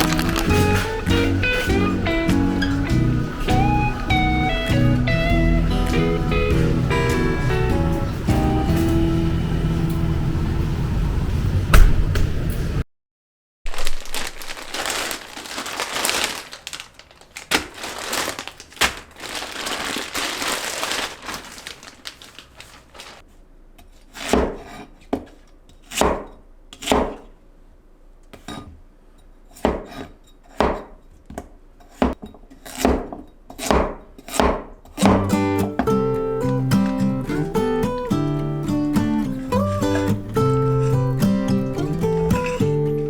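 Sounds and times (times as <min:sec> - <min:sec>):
plastic packaging crinkling: 0:00.0 - 0:01.7, 0:13.7 - 0:23.2, 0:35.7 - 0:43.0.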